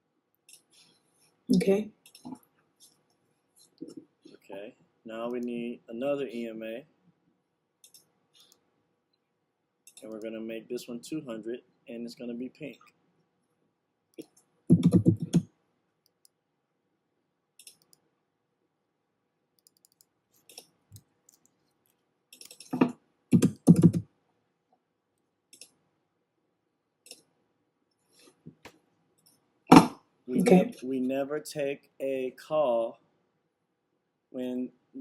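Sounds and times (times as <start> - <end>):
mouse and keyboard clicks: 17.6 - 18.0, 19.6 - 21.6, 22.4 - 24.0, 25.6 - 25.8.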